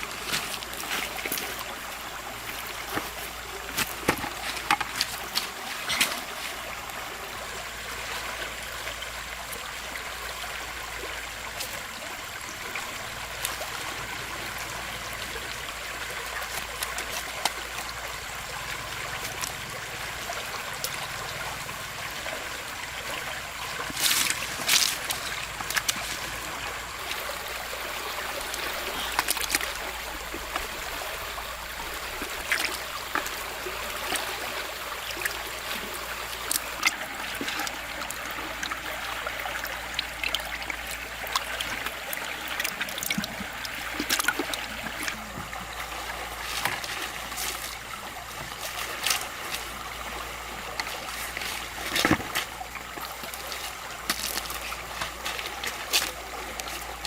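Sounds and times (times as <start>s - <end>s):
river water flowing: 0.0s - 57.0s
sharp water splashes: 11.4s - 57.0s.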